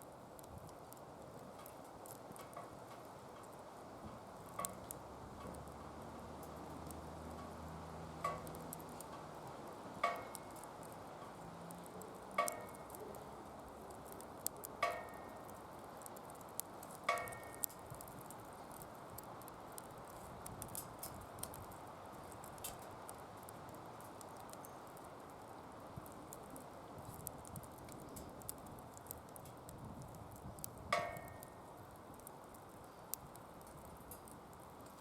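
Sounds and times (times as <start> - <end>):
wood fire hissing and crackling: 0.0 - 35.0
sharp pops with ringing tone: 8.2 - 9.0, 10.0 - 11.0, 12.4 - 13.2, 14.0 - 16.1, 17.1 - 18.1, 30.9 - 31.6.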